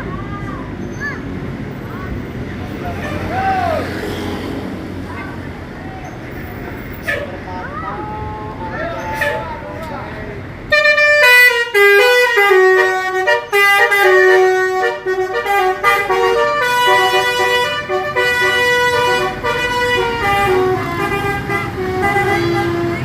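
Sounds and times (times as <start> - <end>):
bus musical horn playing a tune: 10.7 - 23.0.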